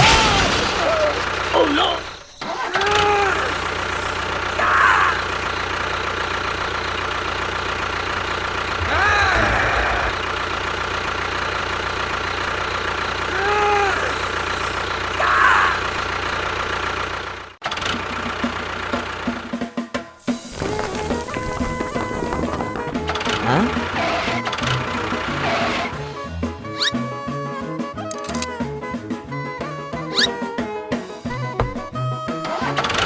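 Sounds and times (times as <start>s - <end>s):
short rising and falling squeaks: 8.7s - 10.4s, 26.7s - 27.2s, 30.0s - 30.6s.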